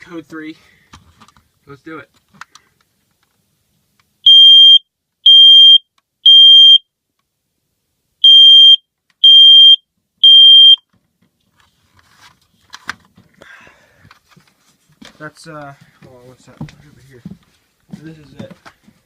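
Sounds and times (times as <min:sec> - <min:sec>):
smoke alarm beeps: 0:04.2 - 0:06.9, 0:08.2 - 0:10.8.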